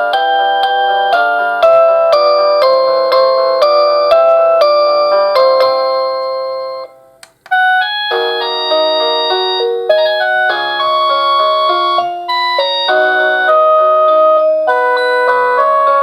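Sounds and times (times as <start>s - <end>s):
doorbell electronic chime tunes: 0.0s - 16.0s
click: 7.2s - 7.6s.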